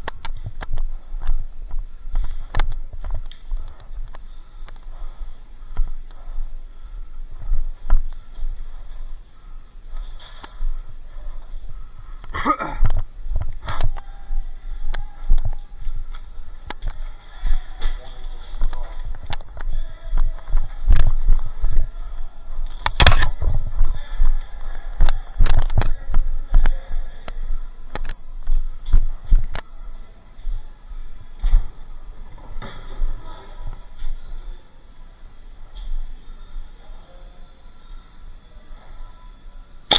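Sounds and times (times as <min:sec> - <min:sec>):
sharp loud crack: 0:23.0 - 0:23.3.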